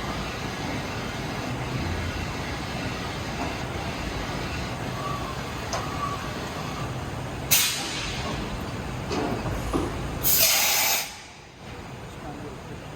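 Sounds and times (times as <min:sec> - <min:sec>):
machining center running: 0:00.0 - 0:10.2.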